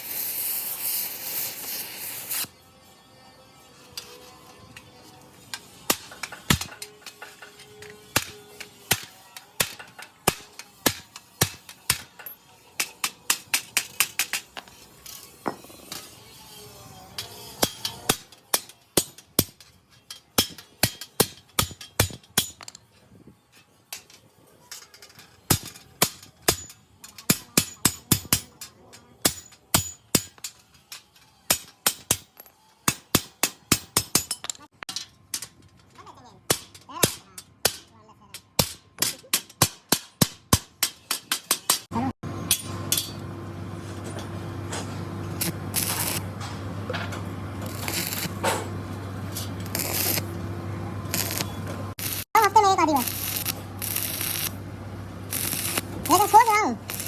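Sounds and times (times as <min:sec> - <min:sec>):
hammer striking metal: 0:05.6 - 0:14.8, 0:17.2 - 0:22.8, 0:25.5 - 0:35.6, 0:36.5 - 0:43.3.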